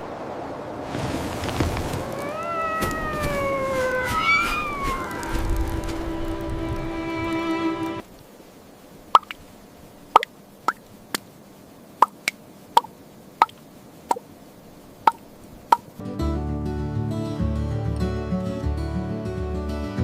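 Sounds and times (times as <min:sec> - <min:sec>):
background music: 0:05.8 - 0:08.0, 0:16.0 - 0:20.0.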